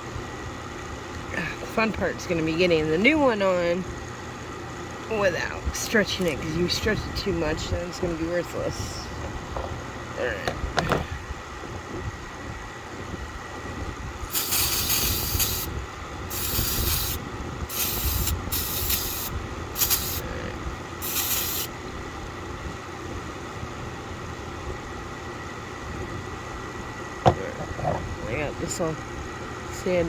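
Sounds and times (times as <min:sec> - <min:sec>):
pressurised spray bursts: 0:14.3 - 0:15.7, 0:16.3 - 0:20.2, 0:21.0 - 0:21.7.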